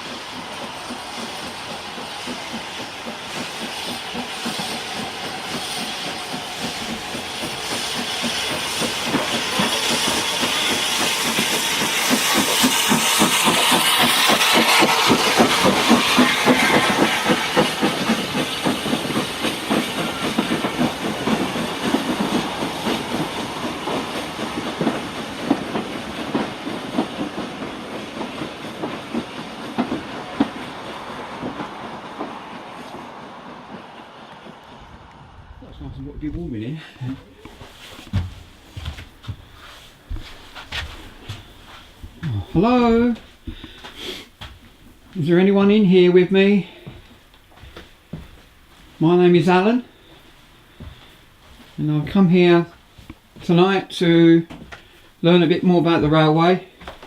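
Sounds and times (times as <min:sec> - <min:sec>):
train passing: 0:00.0 - 0:57.0.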